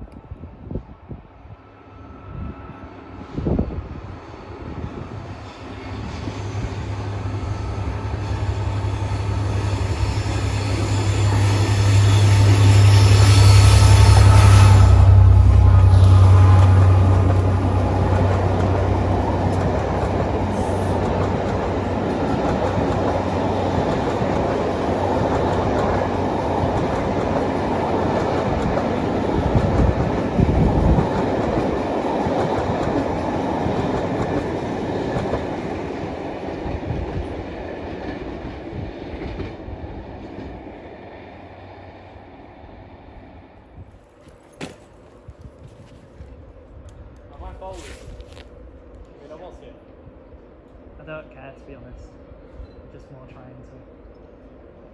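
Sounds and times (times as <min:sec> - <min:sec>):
train rumbling past: 0:00.0 - 0:54.9
low hum: 0:05.1 - 0:22.3.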